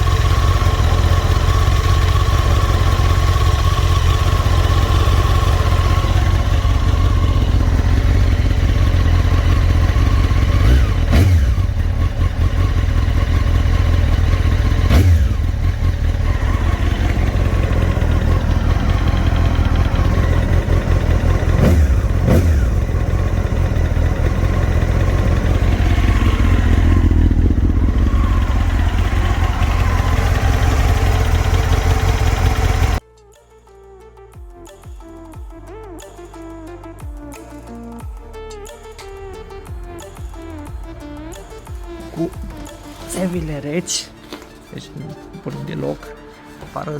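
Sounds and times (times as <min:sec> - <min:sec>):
motorcycle engine throttle blips: 0:00.0 - 0:33.0.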